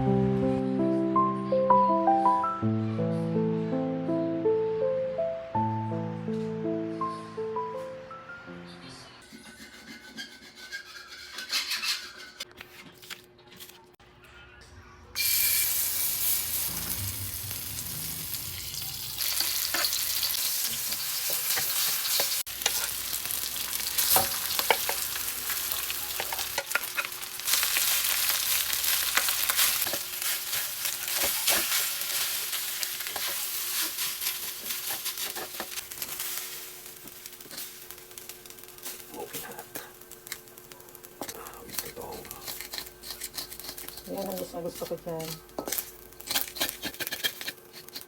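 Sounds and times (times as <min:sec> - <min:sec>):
food sizzling in frying pan: 0:15.2 - 0:48.0.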